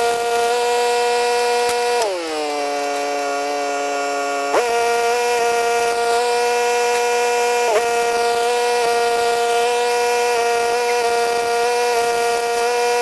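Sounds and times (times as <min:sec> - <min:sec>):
power tool motor whine: 0:00.0 - 0:13.0.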